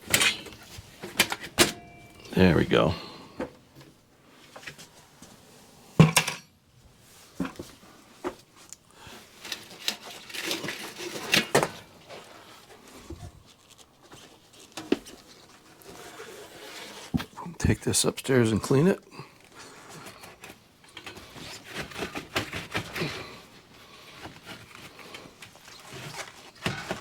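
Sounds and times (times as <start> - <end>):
sheet metal clanking: 1.5 - 2.4.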